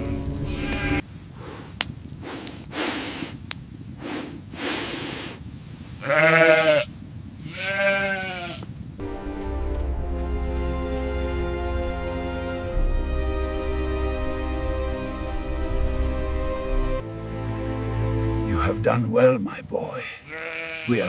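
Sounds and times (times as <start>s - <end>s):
sheep or goat bleating: 0.5s - 1.0s, 6.0s - 8.6s, 20.2s - 21.0s.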